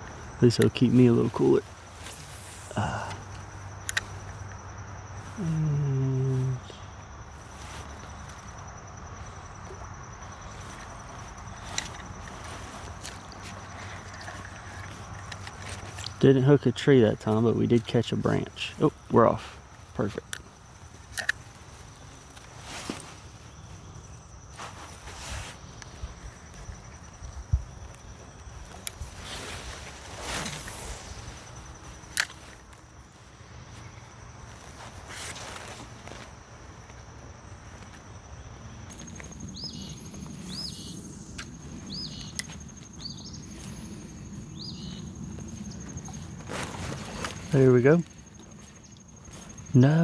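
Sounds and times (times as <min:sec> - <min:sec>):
insect buzzing: 0:00.0 - 0:16.2, 0:18.9 - 0:36.2, 0:38.8 - 0:50.0
fishing tackle clicks and swishes: 0:02.0 - 0:04.6, 0:10.6 - 0:16.2, 0:20.1 - 0:23.0, 0:27.8 - 0:32.9.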